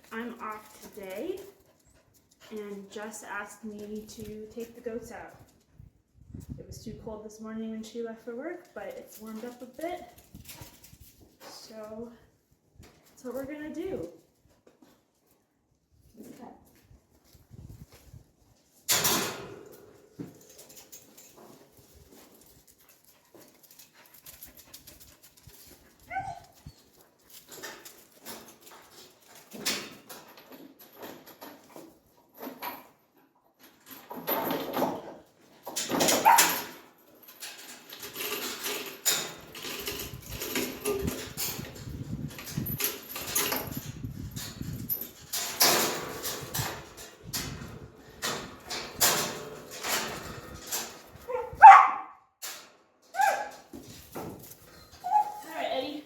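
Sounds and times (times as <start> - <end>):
dog yipping: 26.1 - 26.8, 36.2 - 36.5, 51.3 - 52.2, 53.2 - 53.5, 55.0 - 55.5
dog whining: 51.3 - 52.0, 55.0 - 55.5.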